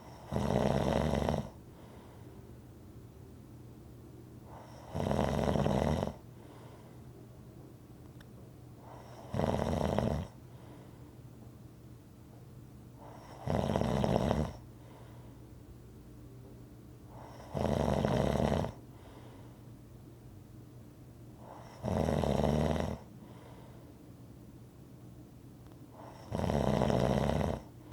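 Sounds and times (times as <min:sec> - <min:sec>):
faint low hum: 0:00.0 - 0:27.9
person snoring: 0:00.2 - 0:01.6, 0:04.5 - 0:06.2, 0:13.0 - 0:14.6, 0:17.2 - 0:18.8, 0:26.0 - 0:27.7.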